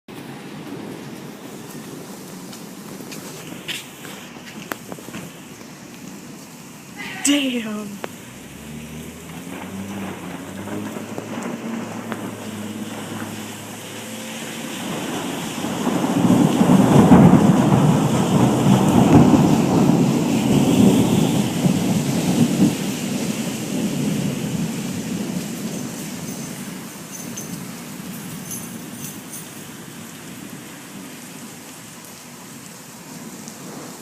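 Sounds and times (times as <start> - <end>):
rain falling: 0.1 - 34.0
thunder rumbling: 8.0 - 27.0
loud peal of thunder: 9.3 - 25.4.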